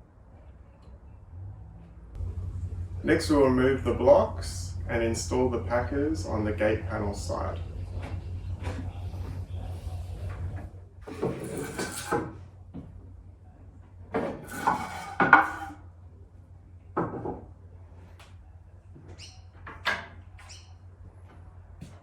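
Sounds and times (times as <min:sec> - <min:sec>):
blocks scraping and knocking: 0:11.1 - 0:12.4, 0:14.2 - 0:15.8.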